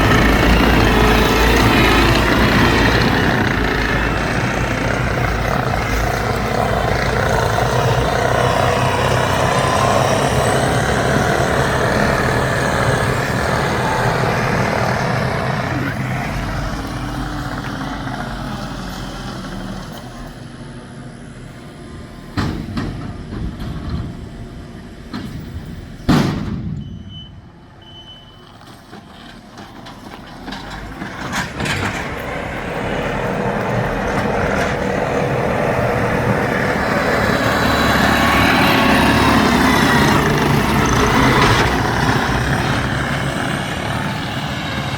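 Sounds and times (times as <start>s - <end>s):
skid steer diesel engine: 0.0s - 44.9s
loud bang: 25.0s - 27.7s.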